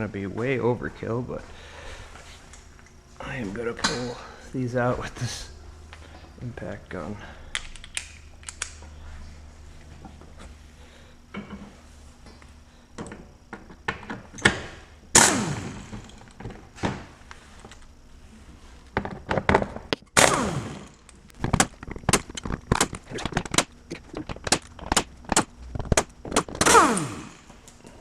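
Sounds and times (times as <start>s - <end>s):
motor whine winding down: 15.1s - 16.4s, 20.2s - 21.1s, 26.6s - 27.6s
impact gun hammering: 15.2s - 16.1s.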